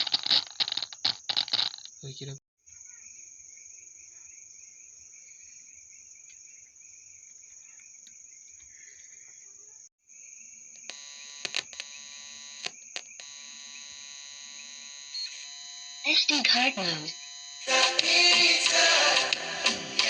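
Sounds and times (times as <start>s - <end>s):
sharp clicks: 0.0s - 2.0s, 10.8s - 17.4s
insect trill: 0.0s - 17.8s
electrical buzz from speaker: 10.8s - 17.8s.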